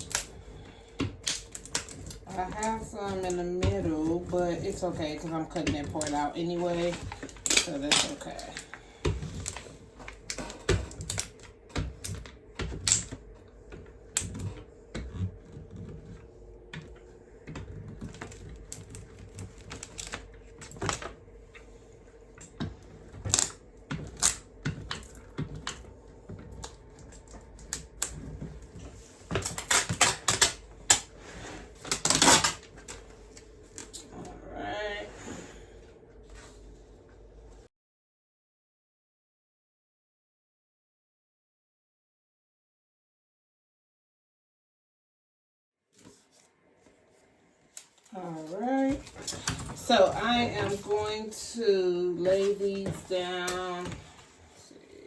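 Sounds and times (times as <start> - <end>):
faint steady hum: 0.0 - 37.7.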